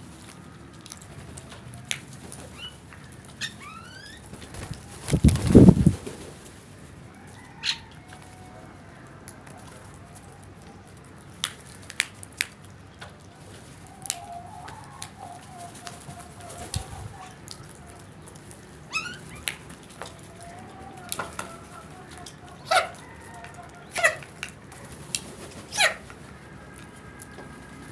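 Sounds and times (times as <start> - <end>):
birds calling: 1.1 - 6.2, 10.6 - 27.9.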